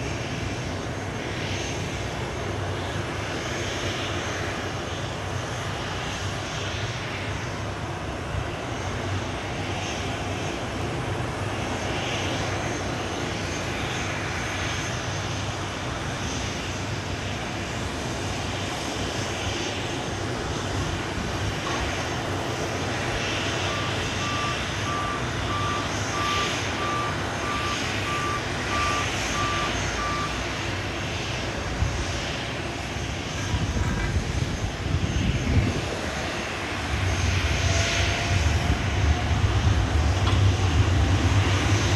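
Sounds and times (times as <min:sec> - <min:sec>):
jet engines humming: 0:00.0 - 0:41.9
short beeps: 0:23.7 - 0:30.4.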